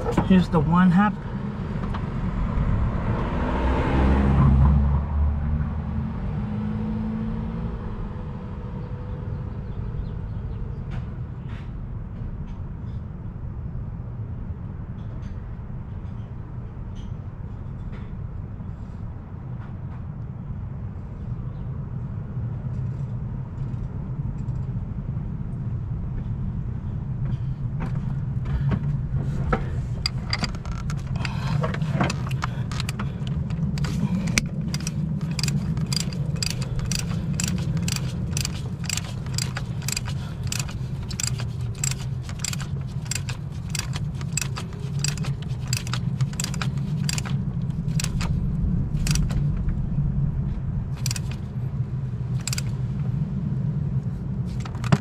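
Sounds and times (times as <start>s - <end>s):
socket ratchet clicking: 30.0s - 48.4s, 49.0s - 49.4s, 51.0s - 51.5s, 52.4s - 52.8s, 54.5s - 55.0s.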